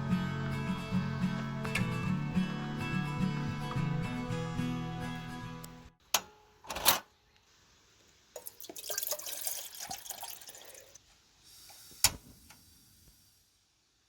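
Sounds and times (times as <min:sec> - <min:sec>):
water splashing into container: 0:08.4 - 0:11.0.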